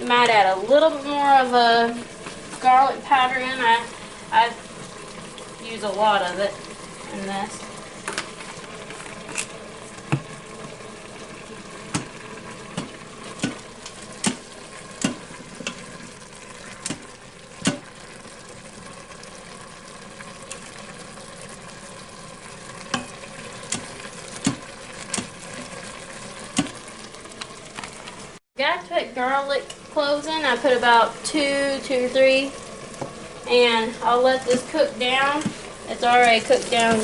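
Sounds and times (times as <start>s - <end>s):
stir-fry sizzling in a pan: 0.0s - 37.0s
utensil clacking against pan: 22.9s - 25.4s.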